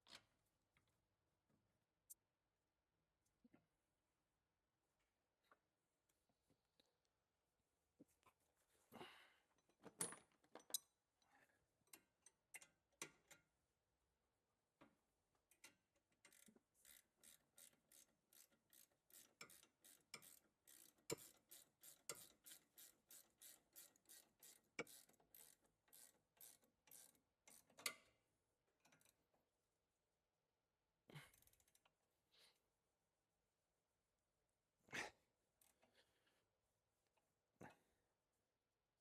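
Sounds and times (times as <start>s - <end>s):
ratchet wrench clicking: 16.2s - 28.0s.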